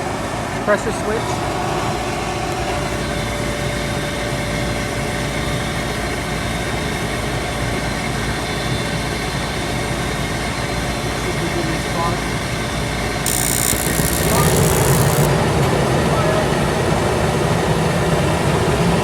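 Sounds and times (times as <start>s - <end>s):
vent motor humming: 10.5s - 19.0s.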